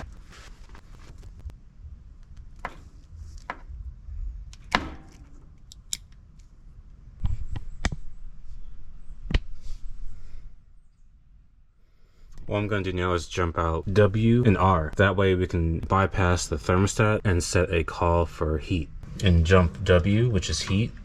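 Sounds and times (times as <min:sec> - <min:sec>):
low rumble: 0:00.0 - 0:04.6, 0:13.8 - 0:21.0.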